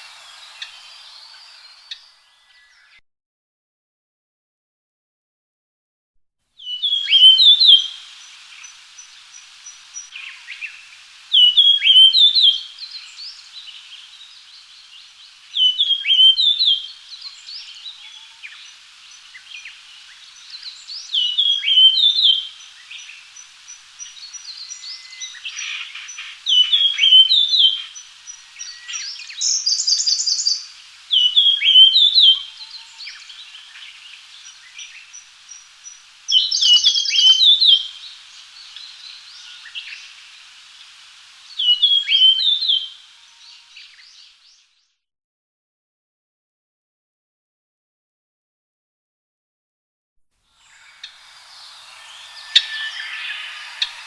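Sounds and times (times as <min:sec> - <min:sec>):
bird whistled phrases: 0:00.0 - 0:02.8, 0:50.6 - 0:54.0
buzzy high bird call: 0:00.0 - 0:02.9, 0:06.6 - 0:44.3, 0:50.6 - 0:54.0.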